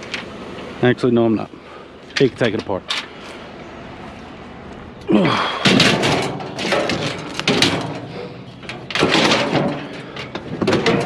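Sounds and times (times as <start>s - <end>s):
metal clanking on metal: 5.3s - 11.0s.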